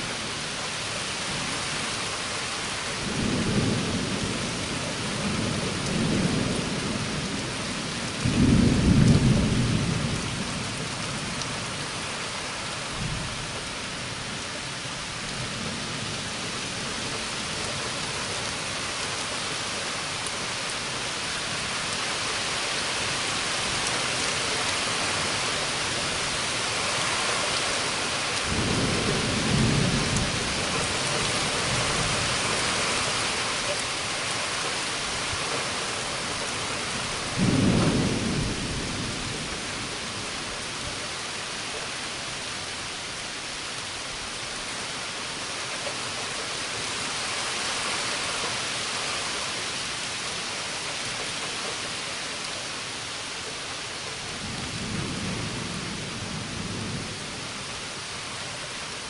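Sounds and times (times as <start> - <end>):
heavy rain: 0.0 - 59.0
thunder rumbling: 3.0 - 11.4, 28.4 - 32.6, 36.7 - 40.6
sharp thunderclap: 37.4 - 39.2.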